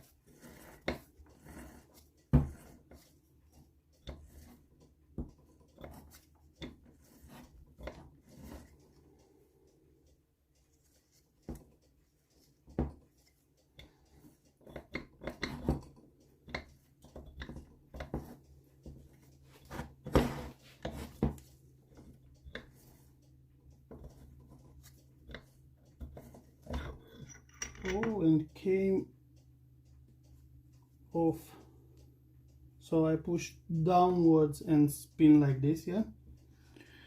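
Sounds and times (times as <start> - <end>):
metal engine parts clicking and knocking: 0.2 - 20.2, 20.9 - 28.7.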